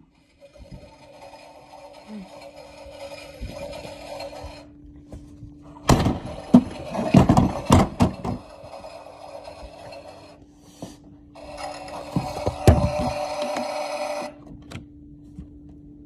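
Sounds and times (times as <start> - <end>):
toy washing machine motor hum: 0.0 - 14.6
rocks banging in a drum: 5.9 - 8.5.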